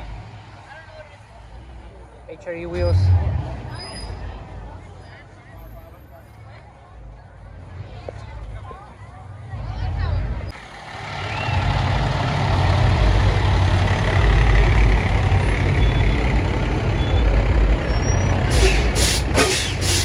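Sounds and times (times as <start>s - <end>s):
vehicle engine rumble: 0.0s - 20.0s
short bursts of hiss: 18.5s - 20.0s.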